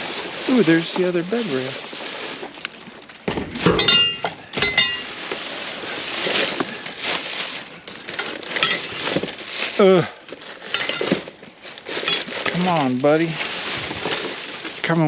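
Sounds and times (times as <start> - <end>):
knocks and rustling: 2.3 - 5.5
metal clanking: 3.3 - 5.2, 8.5 - 9.0.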